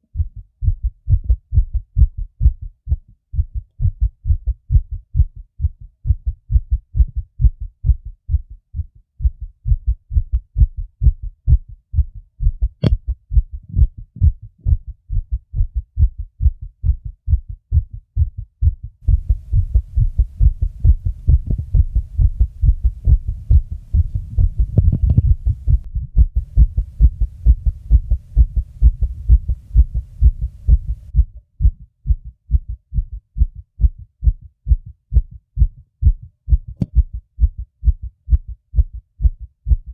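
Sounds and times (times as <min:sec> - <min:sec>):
fast heartbeat thumps: 0:00.0 - 0:39.9
low steady rumble: 0:19.0 - 0:39.8.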